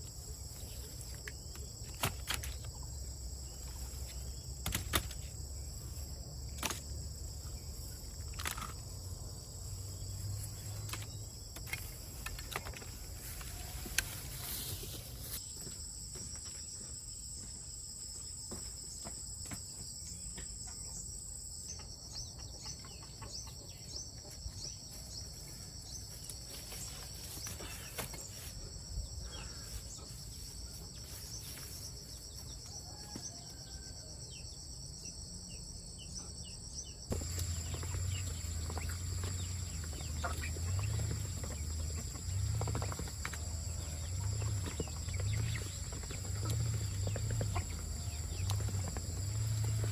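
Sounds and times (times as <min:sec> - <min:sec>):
chickens clucking: 0:21.8 - 0:24.5, 0:37.1 - 0:49.9.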